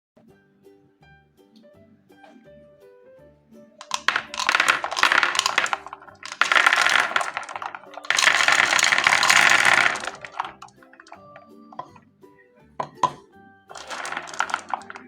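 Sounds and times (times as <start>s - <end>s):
quiet background music: 0.2s - 15.0s
small hard pieces clattering: 3.8s - 12.0s, 12.8s - 15.0s.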